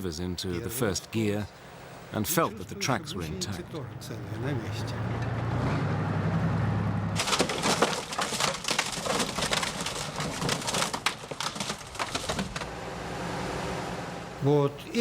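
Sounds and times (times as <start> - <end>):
tank engine droning: 1.6 - 7.2, 12.6 - 14.6
irregular clatter of knocks and crackles: 7.2 - 12.7.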